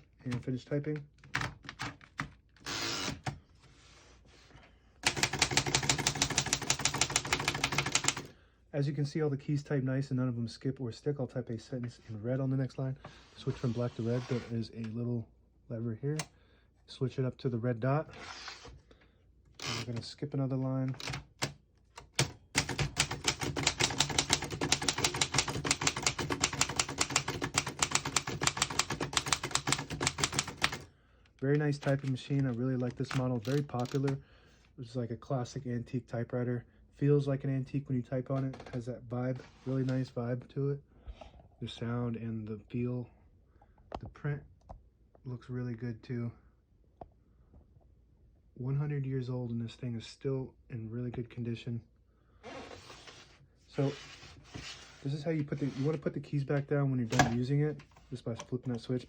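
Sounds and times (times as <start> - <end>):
typewriter typing: 5.0 - 8.3, 21.0 - 30.9
typewriter mechanism click: 22.0 - 30.8.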